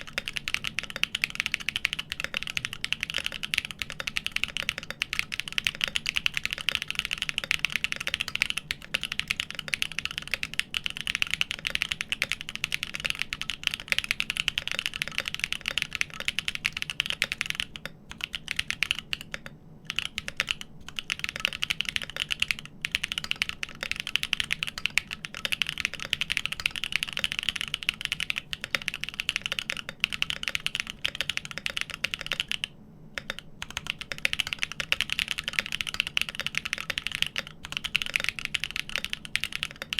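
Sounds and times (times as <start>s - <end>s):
mechanical keyboard typing: 0.0s - 39.9s.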